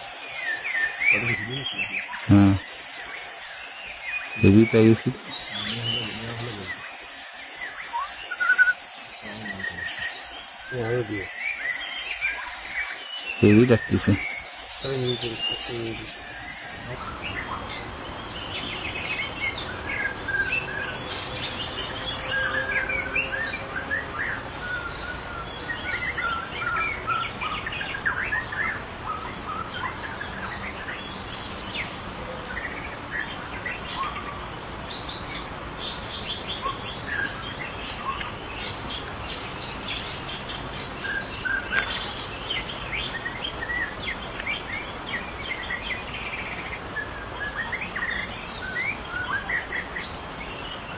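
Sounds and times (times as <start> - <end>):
steady background hiss: 0.0 - 50.9
bird singing whistled phrases: 0.3 - 17.0.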